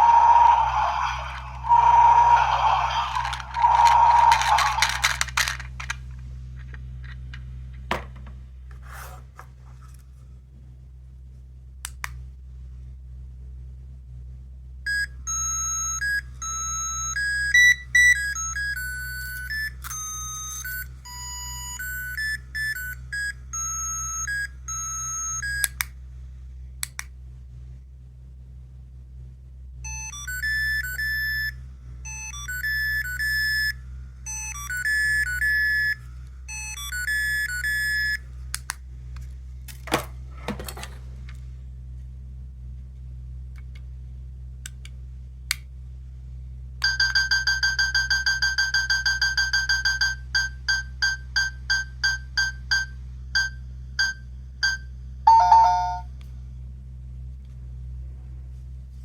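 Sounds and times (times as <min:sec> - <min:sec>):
toy clicks: 0:01.2 - 0:06.0
beeping chiptune melody: 0:34.3 - 0:38.2, 0:55.3 - 0:56.1.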